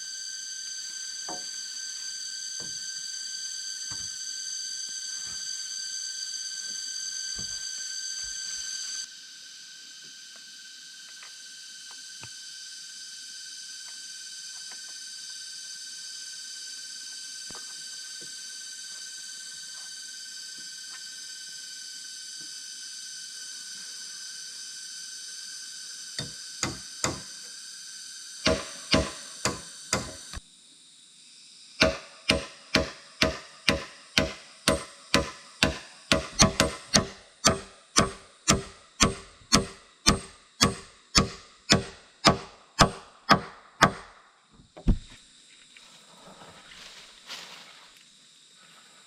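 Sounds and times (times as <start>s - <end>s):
high-pitched hum: 0.0s - 23.2s, 25.8s - 27.5s, 28.1s - 30.4s, 31.8s - 44.0s
hand tool striking bamboo: 1.3s - 1.5s, 26.2s - 27.3s, 28.5s - 30.4s, 31.8s - 44.2s.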